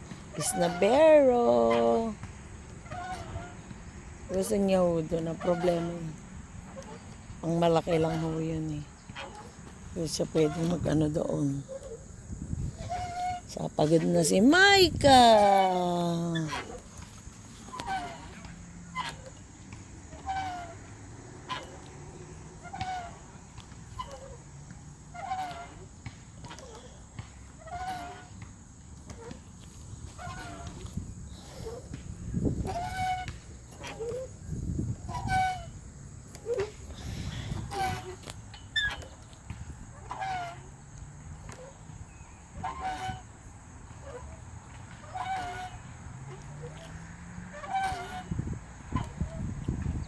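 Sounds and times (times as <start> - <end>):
swing squeaking: 0.0 - 50.0.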